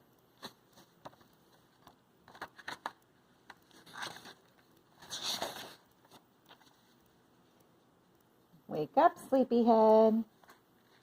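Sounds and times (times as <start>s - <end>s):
book pages rustling: 0.4s - 7.1s, 10.3s - 11.0s.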